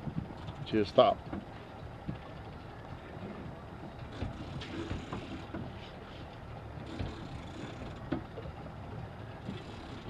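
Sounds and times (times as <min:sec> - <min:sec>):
boat engine rumbling: 0:00.0 - 0:10.0.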